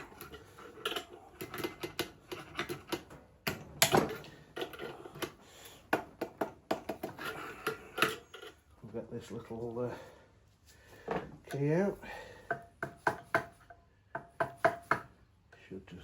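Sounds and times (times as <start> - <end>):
metallic clicks of spanner and puller: 0.0 - 5.4.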